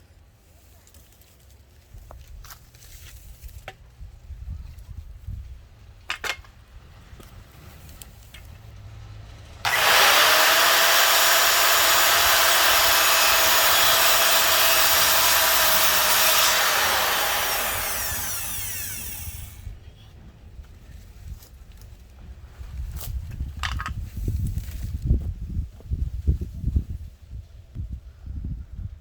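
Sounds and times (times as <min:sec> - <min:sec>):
electric power saw running: 0:09.7 - 0:19.7.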